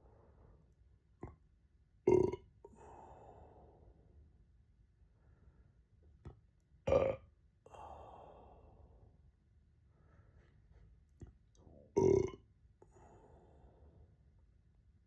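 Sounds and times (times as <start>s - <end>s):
person burping: 2.1s - 2.5s, 6.9s - 7.2s, 12.0s - 12.4s
breath out: 2.7s - 3.6s.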